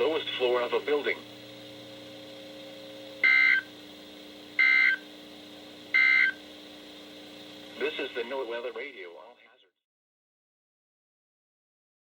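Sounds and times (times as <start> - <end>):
low receiver hum: 0.0 - 9.5
shrill digital warbles: 3.2 - 3.6, 4.6 - 5.0, 6.0 - 6.4.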